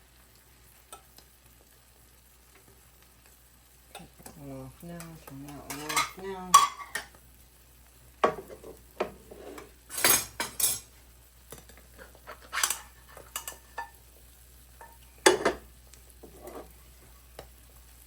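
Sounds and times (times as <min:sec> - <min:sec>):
utensil scraping frying pan: 0:05.0 - 0:07.2, 0:08.2 - 0:14.0, 0:14.8 - 0:17.3.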